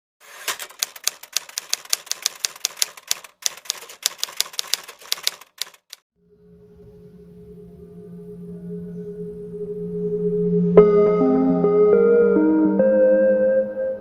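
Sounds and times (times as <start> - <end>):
typewriter keys clacking: 0.2 - 6.0
low held tone: 6.2 - 14.0.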